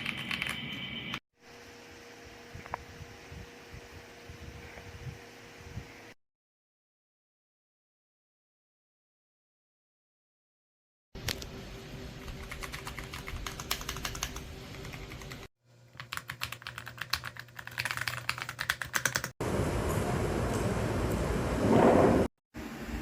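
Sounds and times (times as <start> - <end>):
mechanical keyboard typing: 0.0 - 0.8, 12.2 - 19.4.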